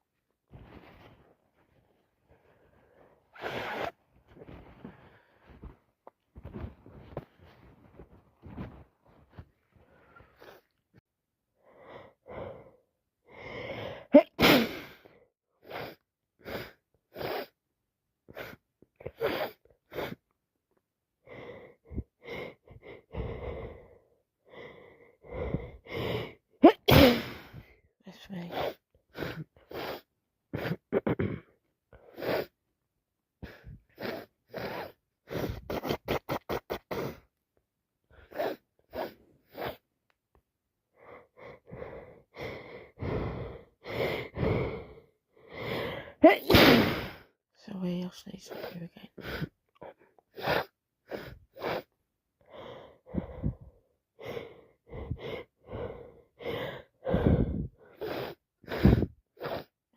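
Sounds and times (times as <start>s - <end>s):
sniffs: 3.3s - 5.7s, 14.4s - 17.6s, 28.4s - 30.8s, 32.1s - 32.6s, 33.4s - 37.3s, 38.2s - 39.9s, 50.3s - 51.9s, 57.1s - 59.7s
woman sneezing: 14.2s - 14.9s, 26.6s - 27.4s, 46.2s - 47.2s
gasping breaths: 21.2s - 32.6s, 40.9s - 46.4s, 48.4s - 59.8s
short breaths: 48.5s - 59.7s.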